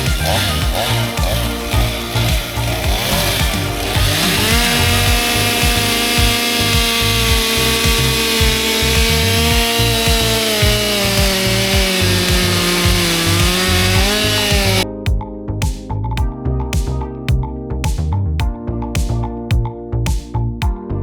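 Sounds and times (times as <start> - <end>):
chainsaw engine at full throttle: 0.0 - 14.8
background music with a beat: 0.0 - 21.0.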